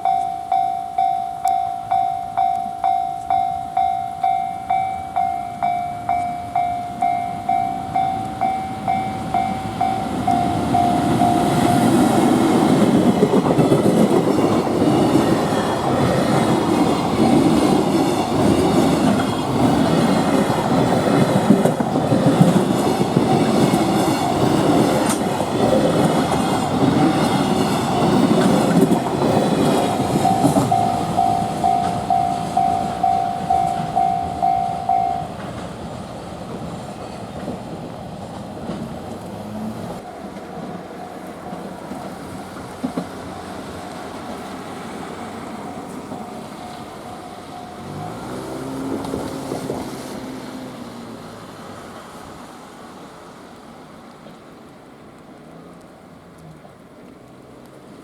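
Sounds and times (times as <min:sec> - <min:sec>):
level crossing warning bell: 0:00.0 - 0:35.8, 0:42.9 - 0:49.1
train wheels clattering: 0:01.4 - 0:50.1.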